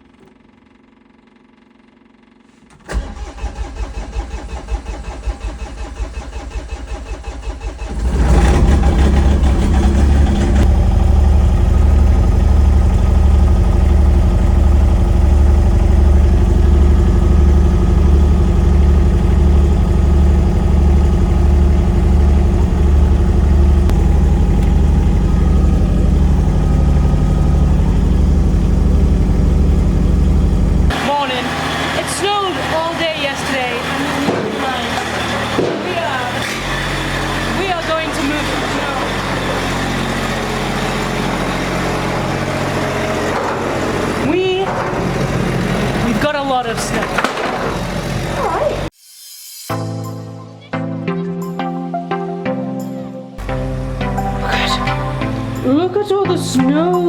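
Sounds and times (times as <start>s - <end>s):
engine cranking and idling: 0.0s - 48.9s.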